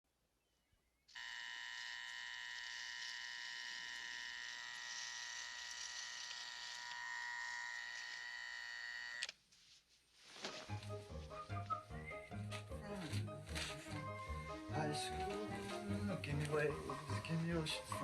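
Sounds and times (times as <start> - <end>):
electric buzz: 1.1 - 9.3.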